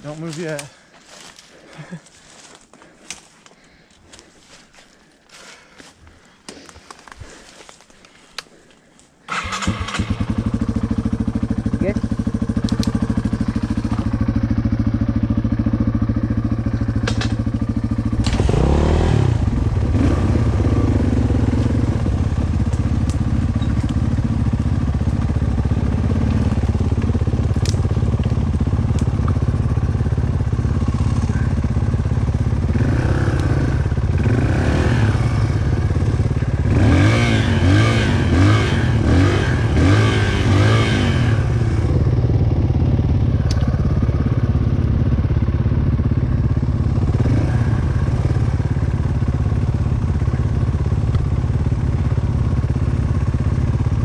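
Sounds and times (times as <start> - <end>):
dirt bike engine revving: 9.3 - 44.5, 45.2 - 50.6.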